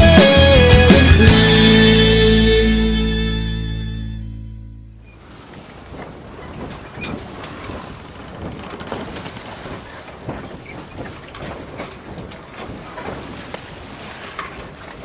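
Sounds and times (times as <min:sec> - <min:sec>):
water noise: 0:04.9 - 0:15.0
wind gusting on microphone: 0:05.0 - 0:15.0.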